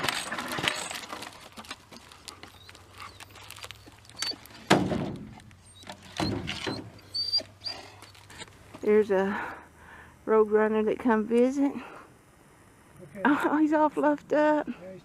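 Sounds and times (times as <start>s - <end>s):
heavy thunks: 4.6s - 7.0s.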